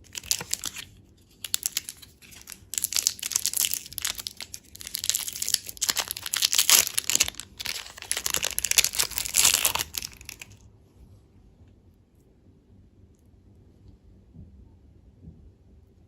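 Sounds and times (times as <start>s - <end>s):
candy packaging crinkling and tearing: 0.0s - 10.6s.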